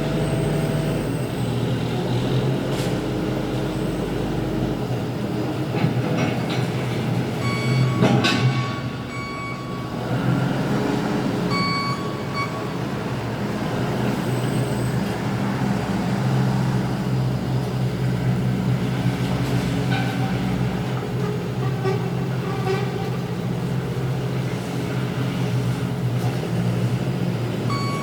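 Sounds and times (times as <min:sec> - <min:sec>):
large vehicle engine humming: 0:00.0 - 0:28.0
high electronic beeps: 0:27.7 - 0:28.0.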